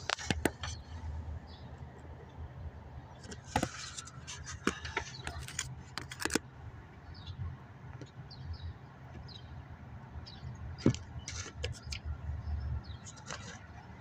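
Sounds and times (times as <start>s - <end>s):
sharp irregular clicks and knocks: 3.2s - 6.4s.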